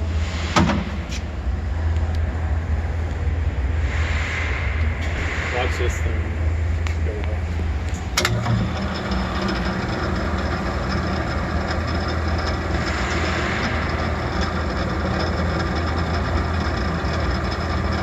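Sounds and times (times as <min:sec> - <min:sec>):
mixer running with low hum: 0:07.3 - 0:18.0.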